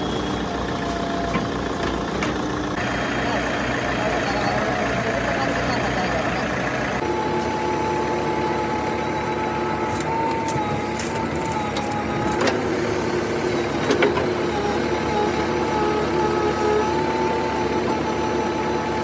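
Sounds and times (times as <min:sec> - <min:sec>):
thin steady whine: 0:00.0 - 0:10.1
heavy diesel machinery running: 0:00.0 - 0:19.0.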